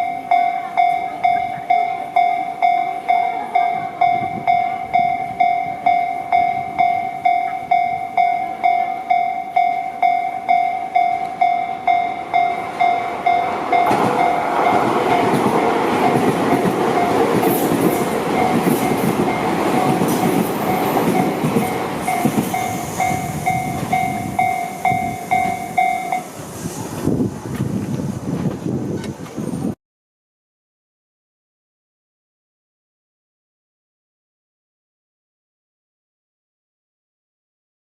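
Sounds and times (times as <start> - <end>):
level-crossing bell ringing: 0.0 - 26.4
train wheels rattling over rails: 11.1 - 29.8.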